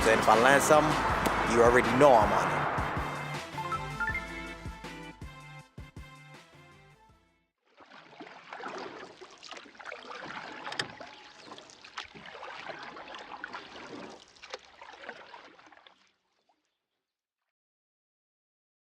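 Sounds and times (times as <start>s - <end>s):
water splashing: 7.6s - 16.8s.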